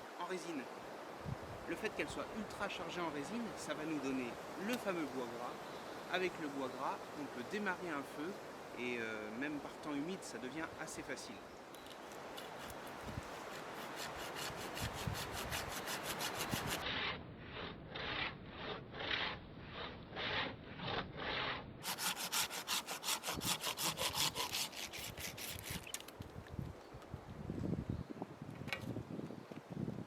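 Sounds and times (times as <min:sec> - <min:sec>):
hand saw cutting wood: 0:12.1 - 0:26.0.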